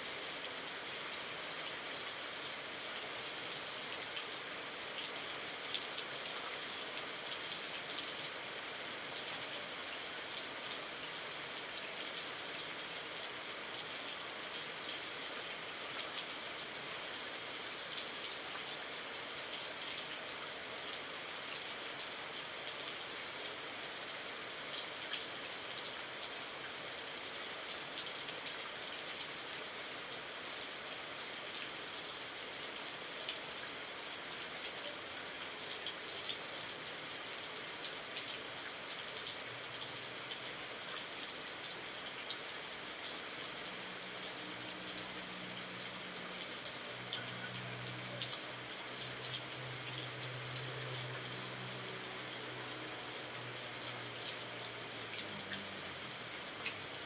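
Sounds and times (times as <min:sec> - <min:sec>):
steady rain: 0:00.0 - 0:57.0.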